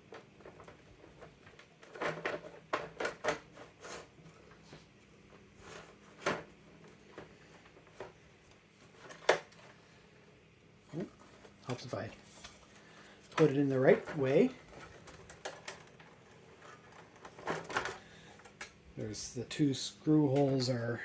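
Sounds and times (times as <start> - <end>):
hard plastic clicking and scraping: 12.5 - 18.8.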